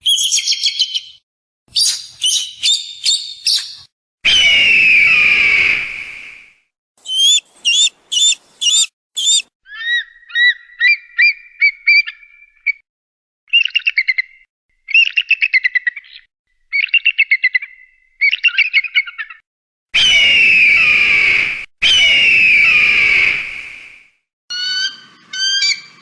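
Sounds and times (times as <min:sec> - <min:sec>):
eagle calling: 0:07.0 - 0:12.7, 0:24.5 - 0:26.0.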